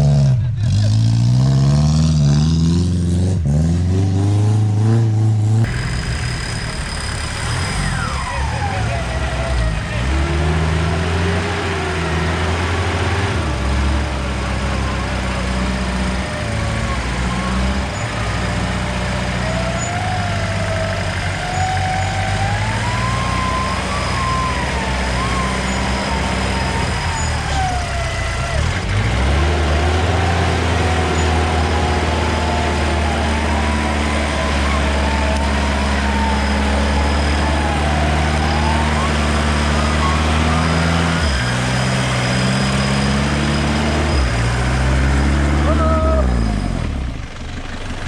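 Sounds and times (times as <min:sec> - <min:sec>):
off-road vehicle engine running: 0:00.0 - 0:48.0
high whine: 0:04.6 - 0:10.9.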